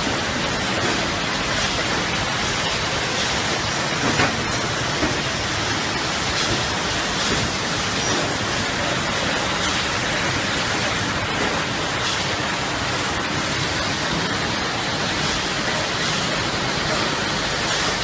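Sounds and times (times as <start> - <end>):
packaging machine hissing: 0.1 - 18.0.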